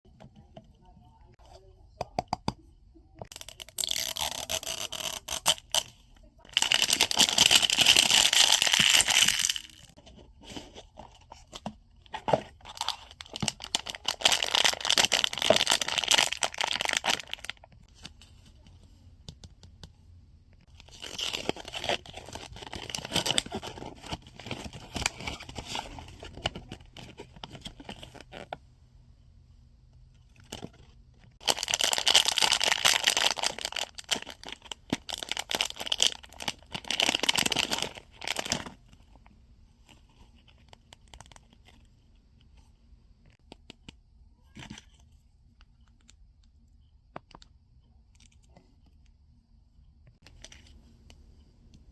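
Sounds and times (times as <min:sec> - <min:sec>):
wrappers tearing and crinkling: 0:03.3 - 0:05.8, 0:06.6 - 0:10.0, 0:12.7 - 0:17.7, 0:31.4 - 0:38.6.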